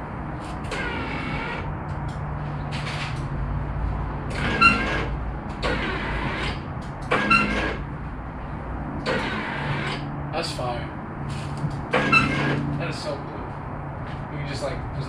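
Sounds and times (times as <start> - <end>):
high-pitched metal squeals: 4.3 - 7.9, 11.9 - 12.7.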